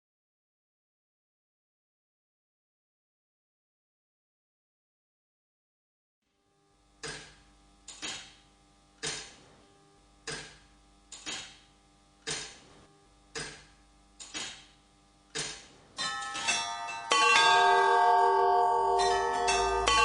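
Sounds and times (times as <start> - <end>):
sharp metallic knocks: 15.4 - 20.0.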